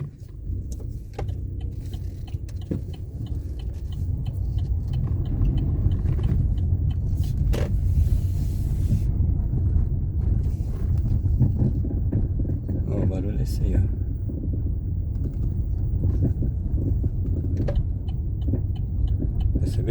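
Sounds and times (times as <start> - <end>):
road and engine rumble: 0.0 - 19.9
steering knocking: 0.0 - 19.9
light ticking: 0.1 - 8.0, 13.4 - 19.9.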